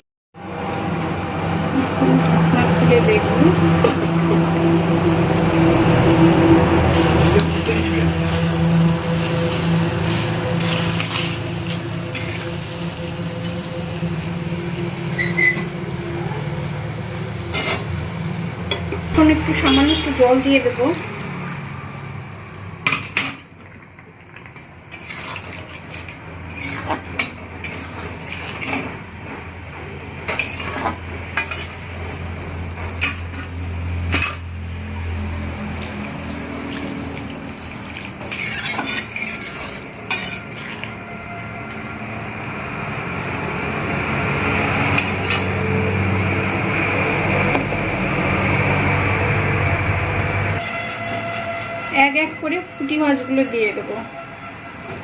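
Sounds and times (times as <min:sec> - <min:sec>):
metal spoon scraping cooking pan: 0:05.9 - 0:13.1, 0:17.3 - 0:20.8, 0:24.9 - 0:29.0, 0:30.2 - 0:32.0, 0:33.0 - 0:34.5, 0:37.9 - 0:41.0, 0:44.9 - 0:45.6.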